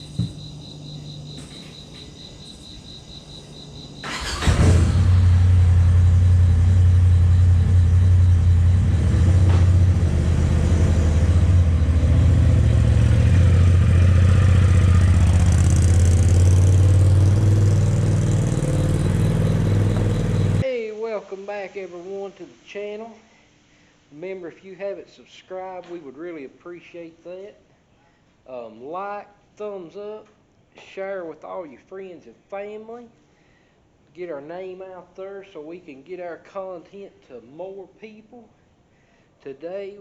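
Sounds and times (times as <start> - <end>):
engine running with deep drone: 0.0 - 20.6
crickets chirping: 0.0 - 22.8.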